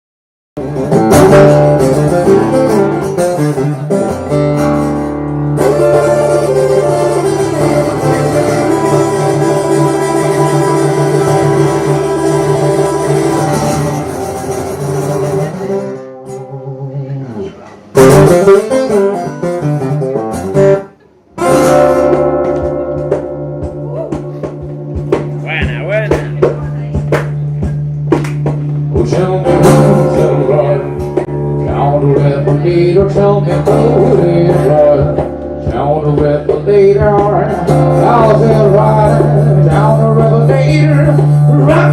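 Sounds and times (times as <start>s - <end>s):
blues guitar playing: 0.6s - 41.9s.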